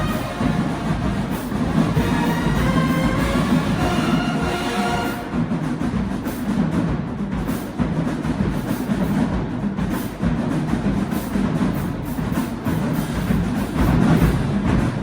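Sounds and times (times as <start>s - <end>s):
horns holding a chord: 0.0s - 5.6s
drum section playing a beat: 0.0s - 15.0s.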